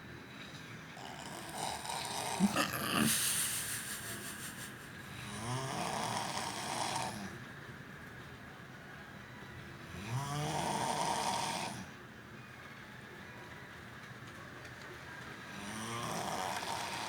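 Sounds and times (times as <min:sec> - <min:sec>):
sharp snort: 0:01.0 - 0:07.2
person snoring: 0:01.0 - 0:07.3.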